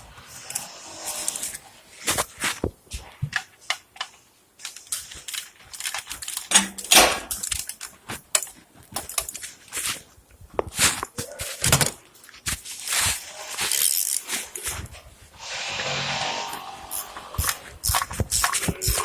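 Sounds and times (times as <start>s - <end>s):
tools clicking and knocking: 3.3s - 9.6s, 16.9s - 19.0s.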